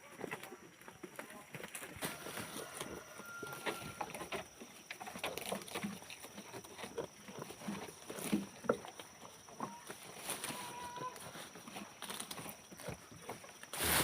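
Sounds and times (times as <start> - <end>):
hooves clicking and knocking: 0.0 - 14.0.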